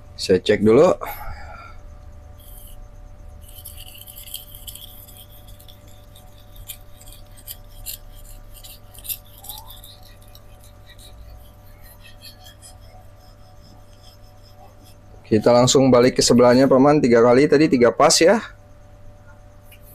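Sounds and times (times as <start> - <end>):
knife scraping on whetstone: 2.3 - 16.8.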